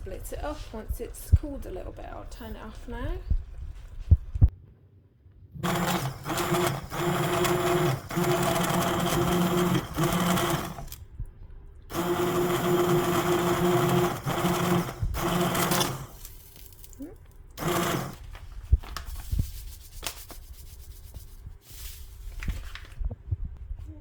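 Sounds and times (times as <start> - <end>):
electric blender motor running: 5.6 - 11.0, 11.9 - 16.3, 17.6 - 18.2.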